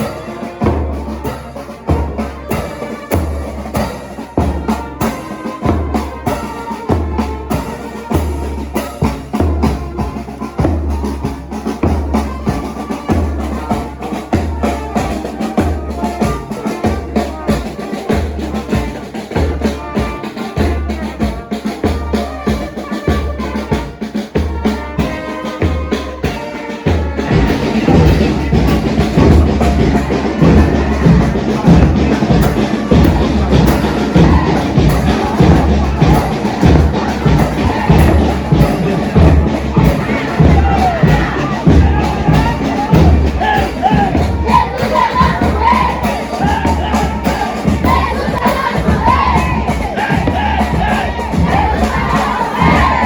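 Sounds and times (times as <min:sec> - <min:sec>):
band music: 0:00.0 - 0:53.0
bass drum beat: 0:26.9 - 0:53.0.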